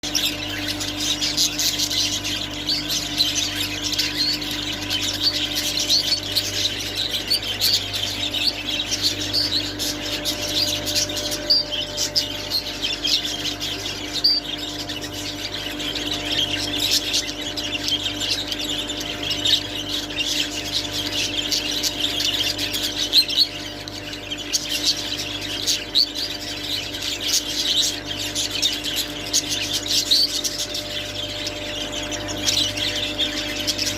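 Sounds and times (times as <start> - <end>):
budgerigars warbling and chattering: 0.0 - 33.9
steady low hum: 0.0 - 33.9.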